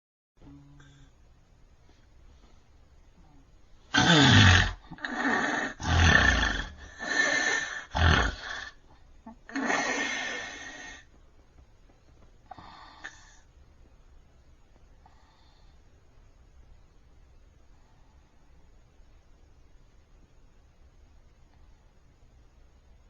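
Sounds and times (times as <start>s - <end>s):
man snoring loudly: 4.0s - 8.8s.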